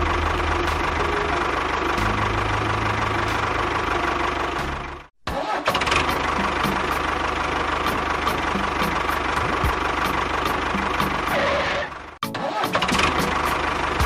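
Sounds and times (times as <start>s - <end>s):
small engine idling with knocking: 0.0s - 14.0s.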